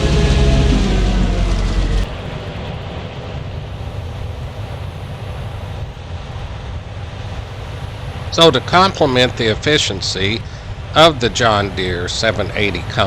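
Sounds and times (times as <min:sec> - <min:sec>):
heavy farm machinery droning: 0:00.0 - 0:02.4.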